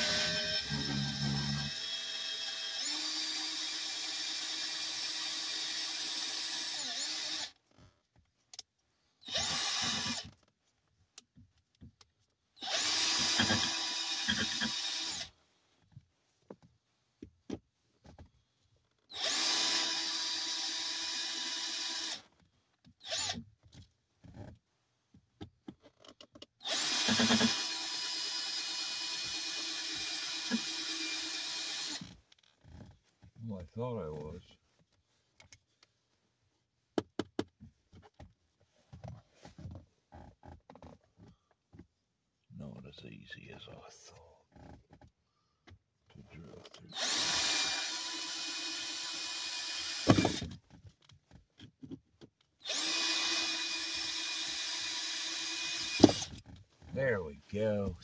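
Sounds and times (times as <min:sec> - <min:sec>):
power drill whining: 0:00.0 - 0:07.6, 0:09.2 - 0:10.4, 0:12.6 - 0:15.3, 0:19.1 - 0:22.3, 0:23.0 - 0:23.4, 0:26.6 - 0:32.8, 0:46.9 - 0:50.6, 0:52.6 - 0:56.5
small clicks and knocks: 0:22.4 - 0:26.6.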